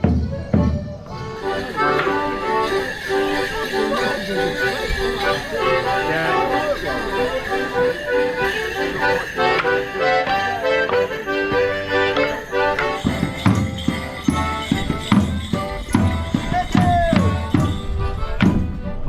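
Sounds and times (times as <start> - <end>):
low thuds beat: 0.0 - 3.9, 8.1 - 19.0
accordion folk dance music: 0.0 - 19.0
jingling bells: 0.0 - 19.0.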